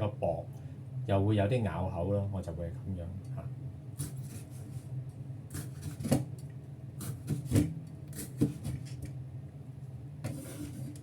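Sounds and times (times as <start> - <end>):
steady low hum: 0.0 - 11.0
knife chopping on a board: 7.0 - 8.9.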